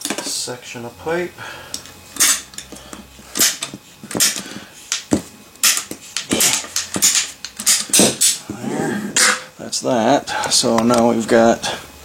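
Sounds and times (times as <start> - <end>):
ratcheting pipe cutter clicking: 5.6 - 8.4.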